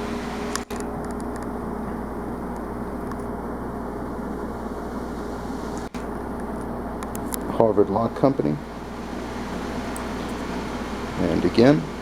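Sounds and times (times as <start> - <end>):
room noise hum and hiss: 0.0 - 12.0.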